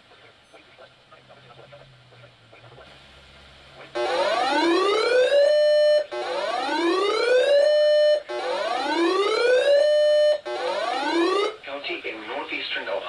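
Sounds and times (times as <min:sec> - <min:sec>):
electronic whoop siren: 0:04.0 - 0:11.6.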